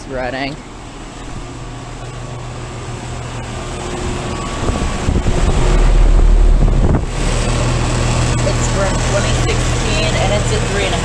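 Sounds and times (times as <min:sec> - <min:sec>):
air conditioner hum: 0:00.0 - 0:11.0
wind buffeting microphone: 0:04.6 - 0:07.9.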